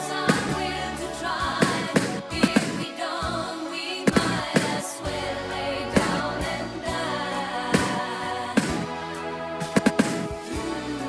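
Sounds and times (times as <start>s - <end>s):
music with sustained tones: 0.0s - 11.0s
sharp bangs: 1.6s - 2.9s, 4.1s - 4.9s, 6.0s - 6.4s, 7.8s - 8.0s, 8.6s - 8.9s, 9.6s - 10.4s.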